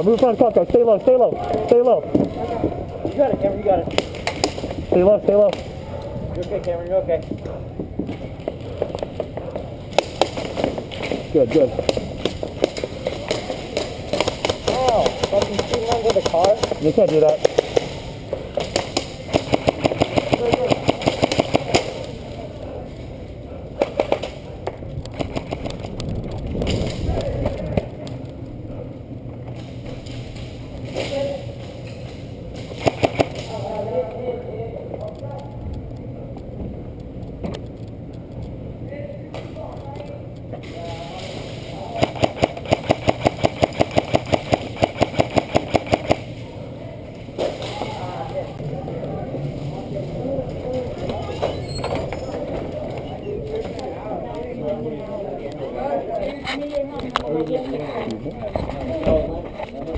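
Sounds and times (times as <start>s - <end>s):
airsoft guns firing: 3.9s - 5.8s, 8.8s - 22.2s, 23.8s - 24.5s, 25.1s - 25.9s, 32.6s - 33.6s, 41.8s - 46.4s.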